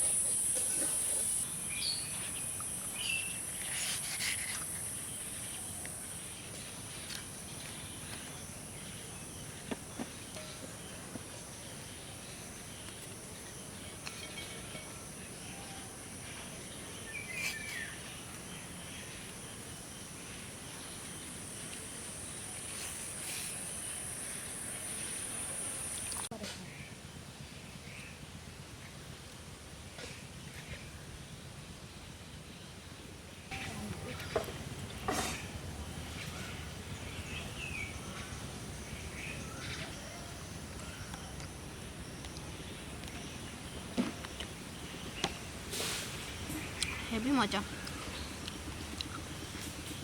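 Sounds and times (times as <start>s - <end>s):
insect chorus buzzing: 0.0s - 26.3s.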